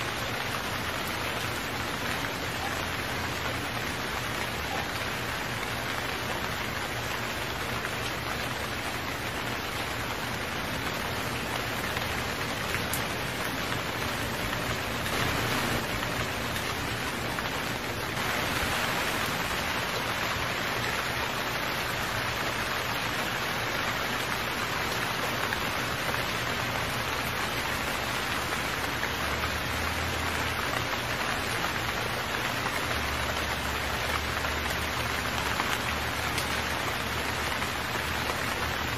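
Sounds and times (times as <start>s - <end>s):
heavy rain falling: 0.0s - 38.9s.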